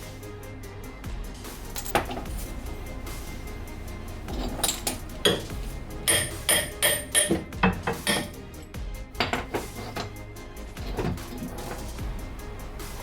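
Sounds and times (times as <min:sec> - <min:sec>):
metal tools clanking: 0:01.7 - 0:02.5, 0:04.2 - 0:08.6, 0:09.2 - 0:10.2.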